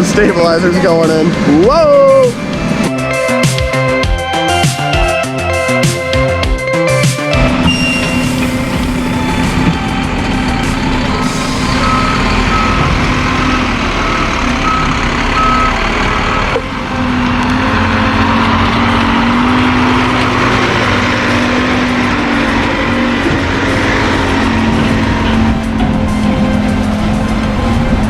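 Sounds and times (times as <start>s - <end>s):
truck diesel engine: 0.0s - 28.0s
reversing alarm beeping: 7.4s - 17.9s.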